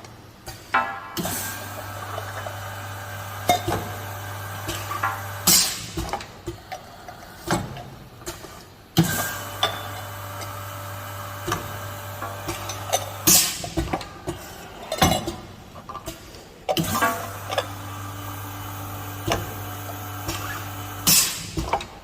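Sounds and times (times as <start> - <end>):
air hissing bursts: 20.4 - 21.6.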